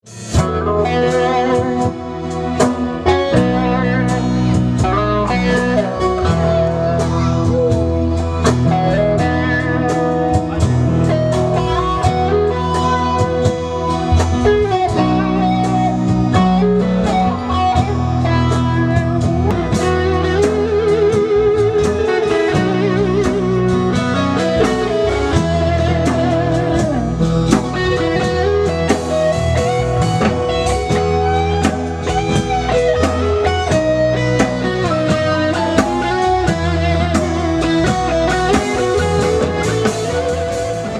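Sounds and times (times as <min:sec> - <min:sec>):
electric guitar lines: 0:00.0 - 0:40.9
live band playing: 0:00.0 - 0:40.9.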